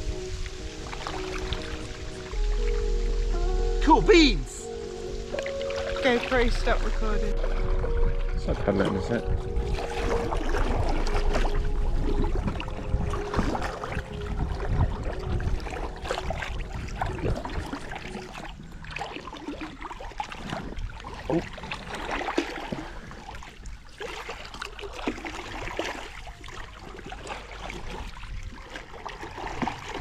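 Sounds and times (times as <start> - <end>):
low rumble: 0.0 - 18.9
water splashing from paddling: 0.0 - 30.0.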